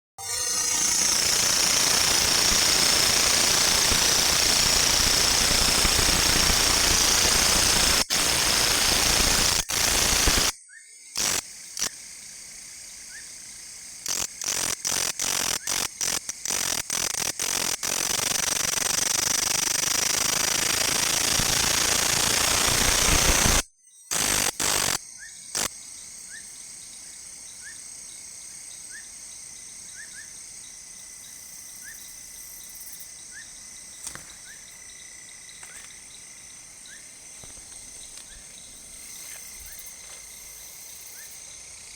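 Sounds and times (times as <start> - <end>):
loud machine running: 0.2 - 10.5, 18.3 - 23.6.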